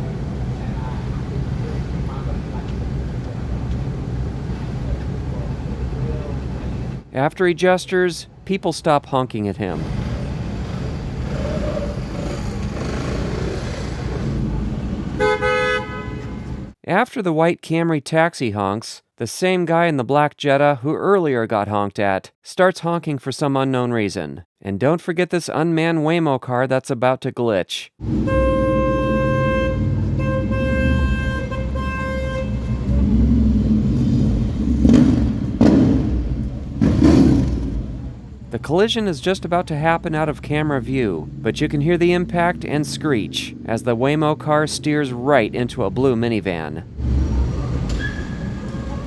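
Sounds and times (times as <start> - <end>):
city traffic rumble: 0.0 - 16.8, 28.0 - 49.0
short rushing noises: 9.8 - 15.2, 32.6 - 38.5
car horn honking: 15.1 - 16.7, 28.0 - 33.4.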